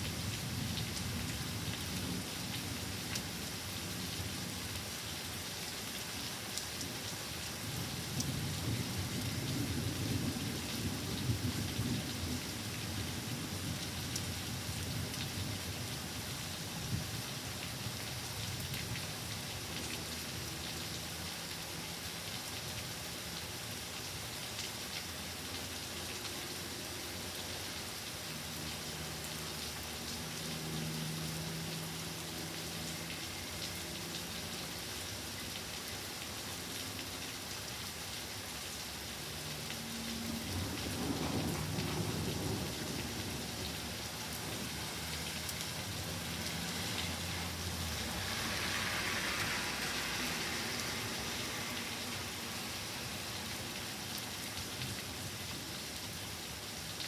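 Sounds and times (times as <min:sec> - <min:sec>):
steady rain falling: 0:00.0 - 0:57.0
thunder rumbling: 0:40.6 - 0:43.5.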